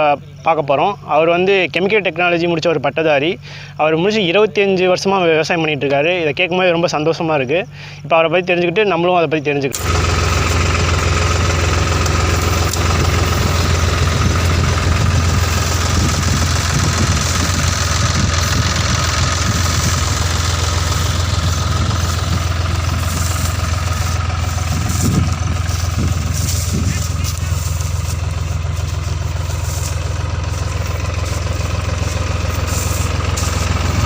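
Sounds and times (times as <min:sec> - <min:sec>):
tractor engine running: 0:09.7 - 0:34.0.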